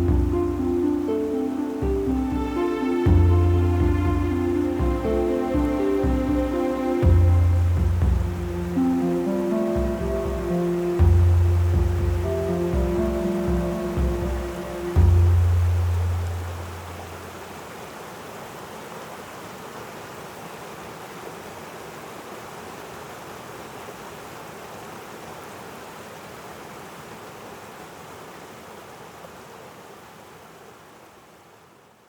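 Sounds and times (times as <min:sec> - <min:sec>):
waterfall rushing: 0:00.0 - 0:31.3.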